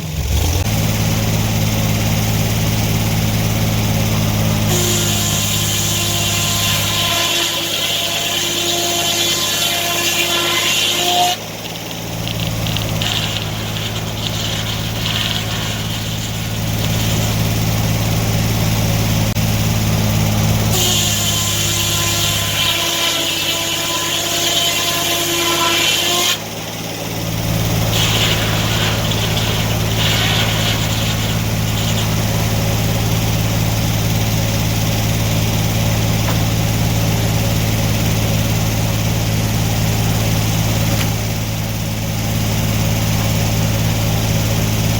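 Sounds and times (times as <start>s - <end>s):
sawmill engine running: 0.0s - 44.9s
saw blade cutting wood: 4.3s - 18.8s, 20.6s - 35.4s.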